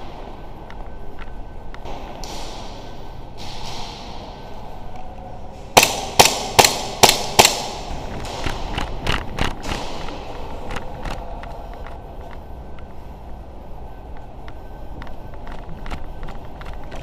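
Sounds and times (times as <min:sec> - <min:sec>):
airsoft gun shots: 0:05.7 - 0:08.8.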